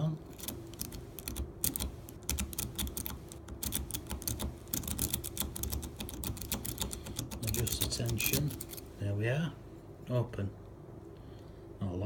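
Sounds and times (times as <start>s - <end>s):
lock pick clicking and rattling: 0.3s - 8.9s.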